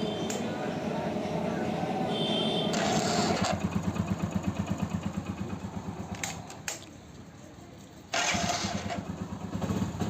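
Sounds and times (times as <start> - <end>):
motorcycle engine idling: 0.0 - 10.0
sharp clicks: 6.1 - 7.0.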